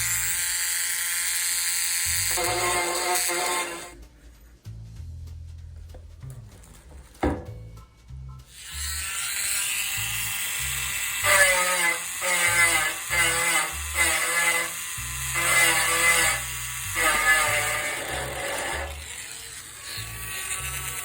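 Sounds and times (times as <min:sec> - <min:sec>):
rotary tool grinding: 0:00.0 - 0:04.0, 0:08.5 - 0:21.0
background music with beat: 0:03.8 - 0:08.6.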